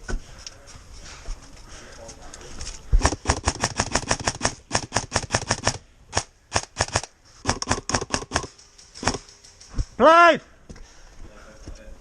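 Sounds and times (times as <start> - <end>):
airsoft gun firing: 3.0 - 9.3.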